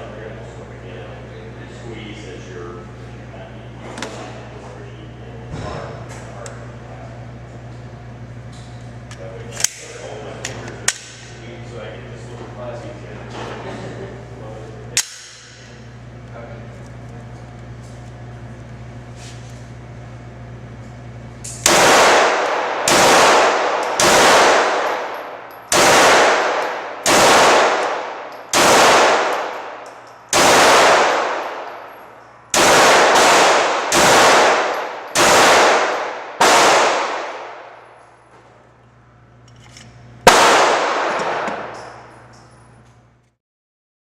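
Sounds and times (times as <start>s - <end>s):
pistol shots with echo: 21.6s - 37.9s, 40.2s - 41.9s.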